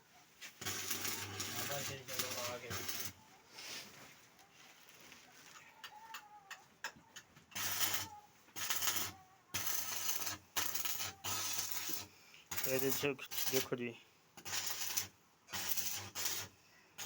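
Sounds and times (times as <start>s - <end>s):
crackling welding arc: 0.4s - 3.2s, 7.5s - 17.0s.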